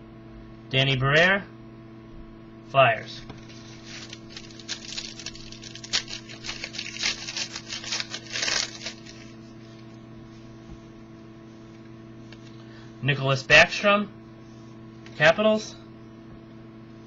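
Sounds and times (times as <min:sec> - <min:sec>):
electrical hum: 0:00.0 - 0:17.0
cards rustling and sliding: 0:03.4 - 0:09.4.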